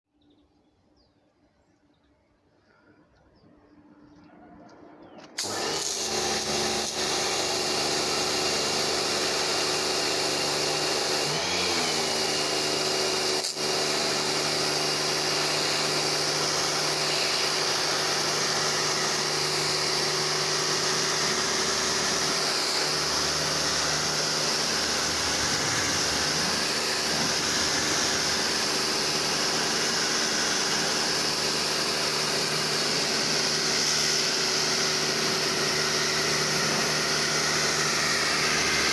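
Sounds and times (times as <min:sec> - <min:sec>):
pressure washer motor hum: 0:05.3 - 0:38.9
water jet hissing: 0:22.3 - 0:30.8.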